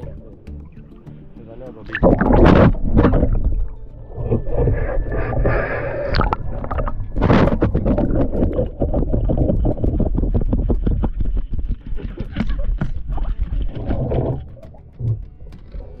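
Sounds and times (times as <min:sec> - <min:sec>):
water sounds: 0:00.0 - 0:16.0
steady low rumble: 0:01.5 - 0:16.0
scraping and knocking in a boat: 0:06.7 - 0:15.6.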